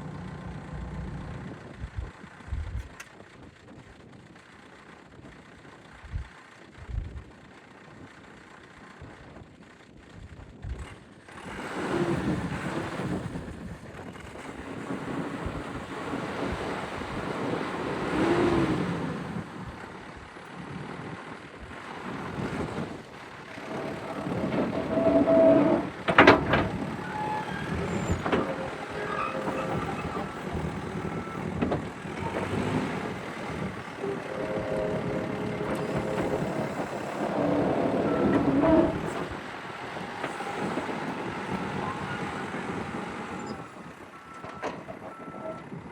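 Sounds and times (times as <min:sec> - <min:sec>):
diesel engine revving: 0:14.4 - 0:43.6.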